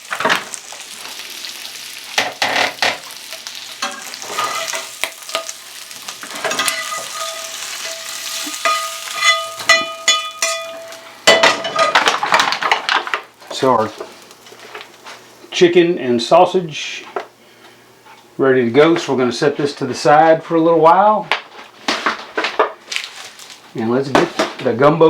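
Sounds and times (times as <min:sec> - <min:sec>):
sausage sizzling in a skillet: 0:00.0 - 0:16.6.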